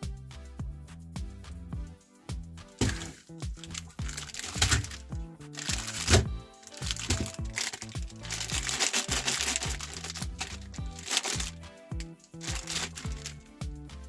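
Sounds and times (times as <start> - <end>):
background music: 0.0 - 14.0
meat grinder crunching: 2.8 - 5.0, 5.6 - 13.4
sharp cracks: 2.8 - 5.0, 5.6 - 13.4.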